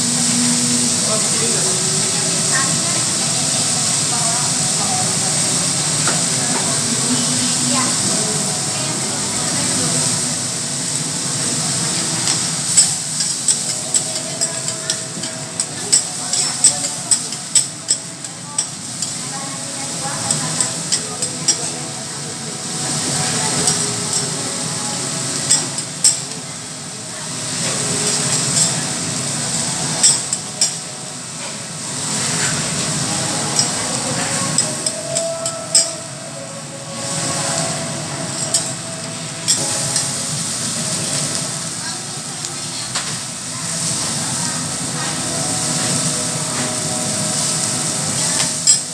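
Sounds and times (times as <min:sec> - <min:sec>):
food sizzling on a griddle: 0:00.0 - 0:48.9
metal spatulas clinking on hot plate: 0:11.9 - 0:19.1, 0:20.2 - 0:21.8, 0:25.3 - 0:26.3, 0:29.5 - 0:30.9, 0:33.5 - 0:36.0, 0:37.0 - 0:40.2, 0:48.3 - 0:48.9.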